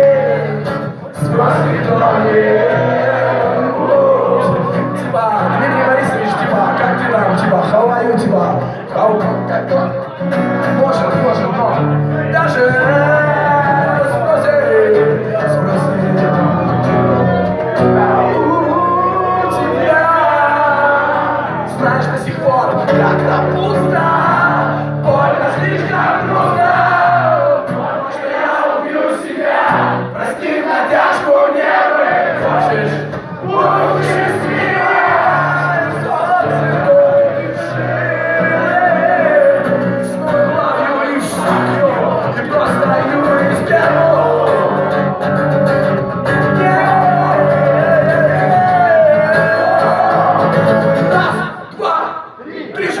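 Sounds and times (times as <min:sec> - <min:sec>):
guitar accompaniment: 0:00.0 - 0:51.8
person singing: 0:30.4 - 0:45.6, 0:46.2 - 0:52.0
live rock band playing: 0:41.4 - 0:51.6.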